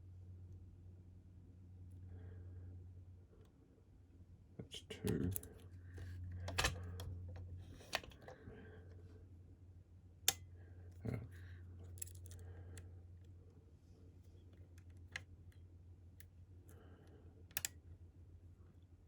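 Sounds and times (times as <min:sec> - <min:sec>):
faint low hum: 0:00.0 - 0:19.0.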